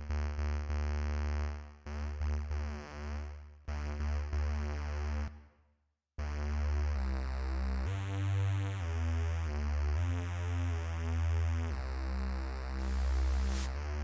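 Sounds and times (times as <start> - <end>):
heavy bass synth line: 12.8 - 13.7.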